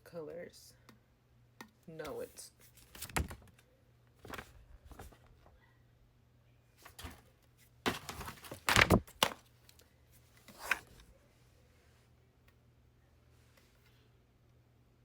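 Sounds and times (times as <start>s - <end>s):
packaging rustling and crinkling: 4.2s - 5.3s, 6.8s - 7.3s, 7.9s - 9.5s.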